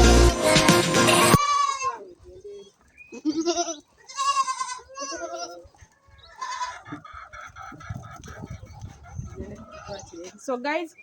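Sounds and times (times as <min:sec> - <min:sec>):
goats bleating: 0:01.4 - 0:02.1, 0:03.1 - 0:07.1.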